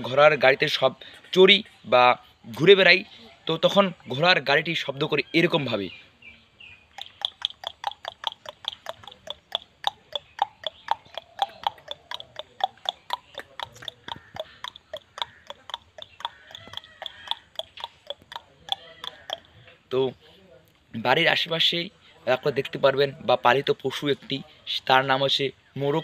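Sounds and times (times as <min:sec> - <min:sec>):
mouth clicks like trotting hooves: 0:06.8 - 0:19.9.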